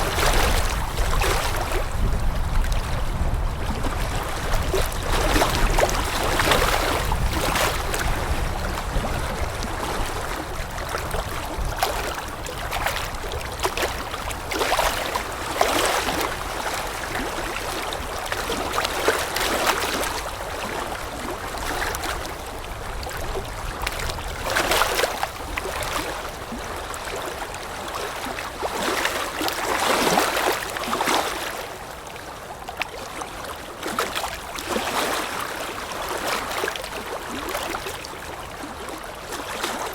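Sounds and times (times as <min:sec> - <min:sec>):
wind noise: 0:00.0 - 0:18.7
small waves lapping: 0:00.0 - 0:39.9.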